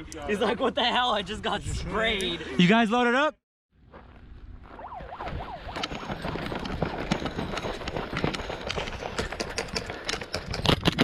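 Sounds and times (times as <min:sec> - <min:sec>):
footsteps running on gravel: 0:03.9 - 0:11.0.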